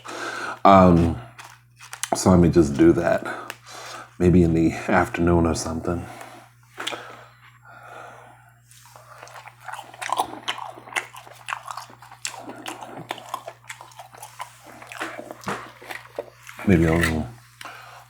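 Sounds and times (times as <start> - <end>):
person chewing crunchy food: 8.7 - 18.0.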